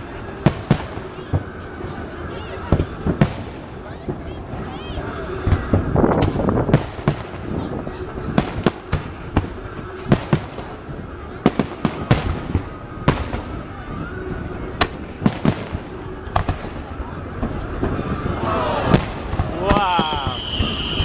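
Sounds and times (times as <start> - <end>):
fireworks bursting: 0.0 - 21.0
hum of people: 0.0 - 21.0.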